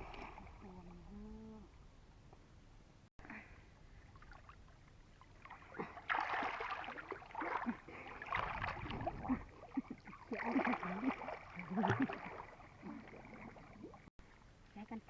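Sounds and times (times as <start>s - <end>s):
water splashing and sloshing: 0.0s - 1.0s, 3.9s - 14.5s.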